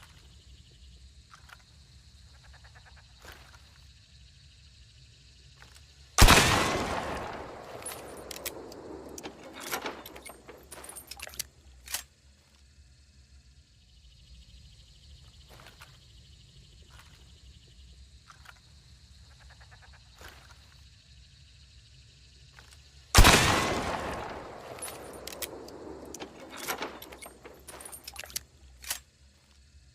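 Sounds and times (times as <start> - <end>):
rifle action metallic clicks: 5.7 - 12.1, 23.2 - 29.0
rifle shot with echo: 6.2 - 11.0, 23.2 - 28.2.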